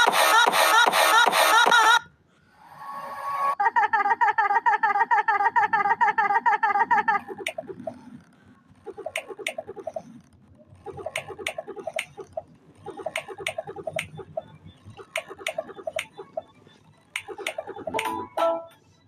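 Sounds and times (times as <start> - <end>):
clucking timer pulses with clicks: 7.0 - 18.9.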